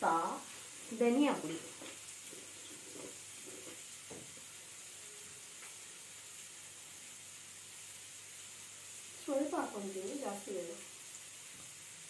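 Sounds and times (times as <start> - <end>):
masala sizzling in oil: 0.0 - 12.0.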